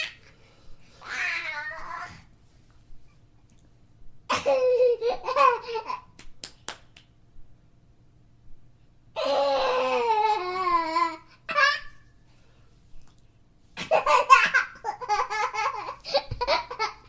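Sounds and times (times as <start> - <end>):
small child laughing: 4.3 - 6.2, 9.2 - 12.0, 13.8 - 17.0.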